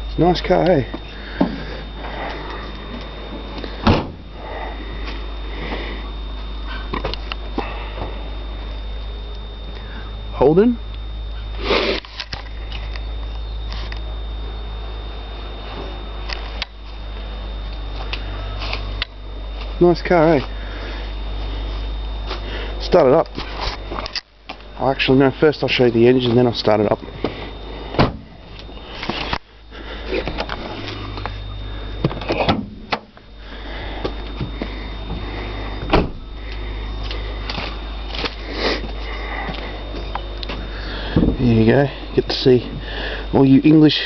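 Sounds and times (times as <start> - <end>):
camera hum with high whine: 0.0 - 44.0
car bonnet clicks and clunks: 3.8 - 4.3, 32.0 - 33.2, 35.8 - 36.3.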